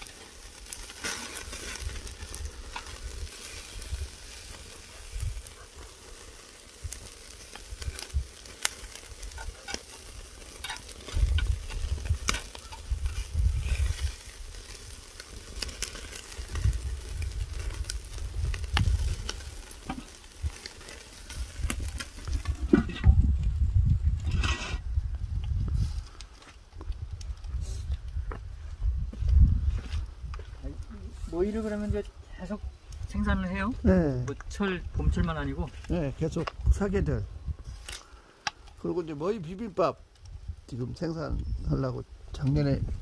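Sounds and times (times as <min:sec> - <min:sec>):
meat sizzling on grill: 0:00.0 - 0:26.2, 0:30.9 - 0:43.0.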